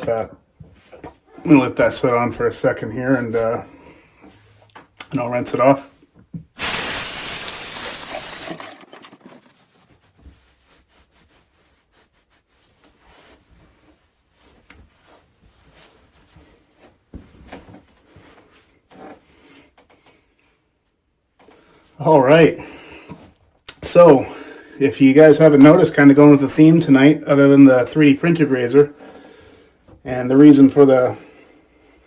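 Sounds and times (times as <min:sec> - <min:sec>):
water running from a tap: 0:06.6 - 0:09.2.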